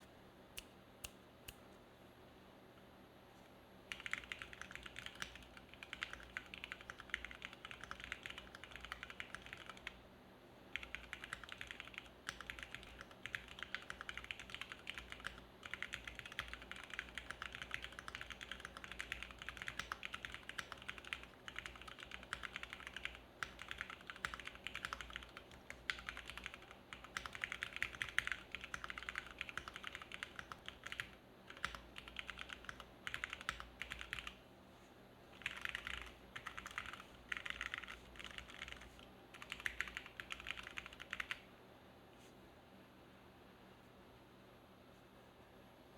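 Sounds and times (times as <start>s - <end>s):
mechanical keyboard typing: 3.9s - 10.0s, 10.8s - 34.4s, 35.4s - 41.4s.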